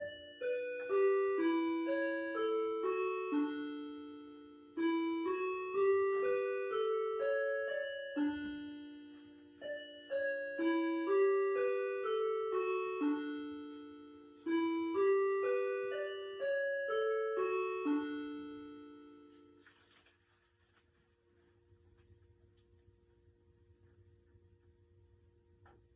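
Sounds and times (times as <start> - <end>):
electronic bell-like chime melody: 0.0 - 19.4.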